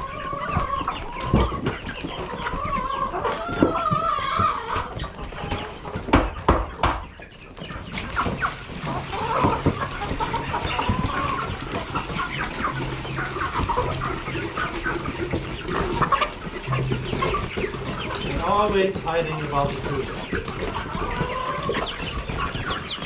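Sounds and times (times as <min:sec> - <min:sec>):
chickens clucking: 0:00.0 - 0:23.0
sharp knocks: 0:06.1 - 0:07.1.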